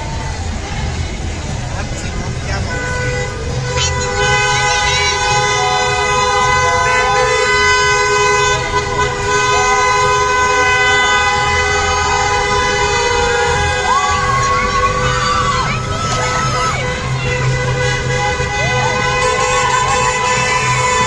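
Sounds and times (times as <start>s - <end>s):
car horns honking: 0.5s - 21.0s
people shouting: 3.4s - 21.0s.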